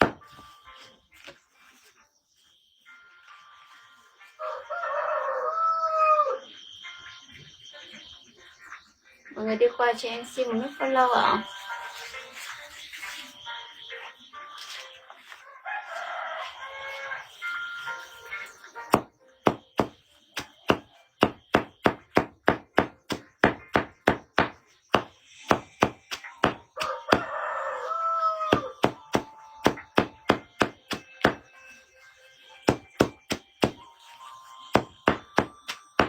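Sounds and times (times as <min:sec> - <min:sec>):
rapid chopping strikes: 0:18.9 - 0:27.3, 0:28.5 - 0:31.4, 0:32.7 - 0:33.8, 0:34.8 - 0:35.8.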